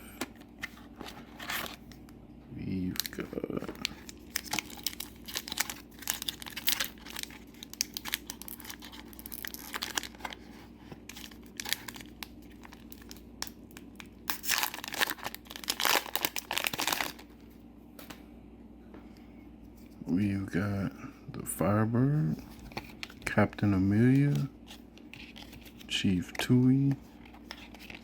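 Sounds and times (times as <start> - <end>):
foil wrapper crinkling: 2.8 - 17.4, 22.5 - 28.0
foil wrapper ripping: 2.9 - 10.4, 11.1 - 17.3.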